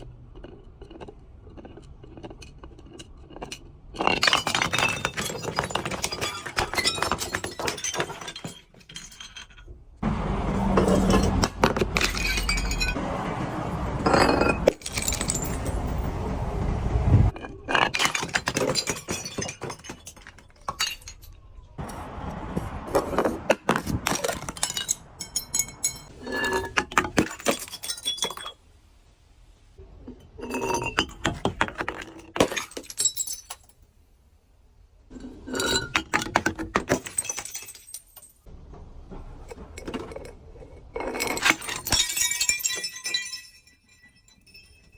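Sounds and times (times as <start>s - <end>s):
glass breaking and crunching: 3.1s - 9.8s, 10.8s - 13.0s, 17.4s - 21.4s, 24.0s - 28.6s, 30.5s - 33.8s, 35.6s - 38.5s, 41.0s - 44.9s
glass shards clinking: 4.0s - 9.7s, 10.7s - 13.0s, 14.0s - 15.9s, 24.0s - 28.6s, 41.0s - 44.9s.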